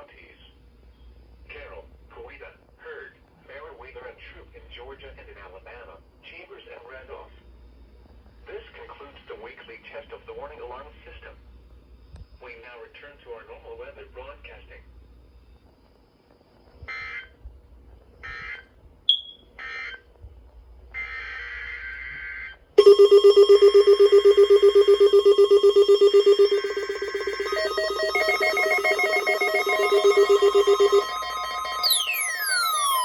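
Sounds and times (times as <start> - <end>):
buzzy digital data bursts: 22.8 - 33.0
loud pulsing alarm tone: 22.8 - 33.0.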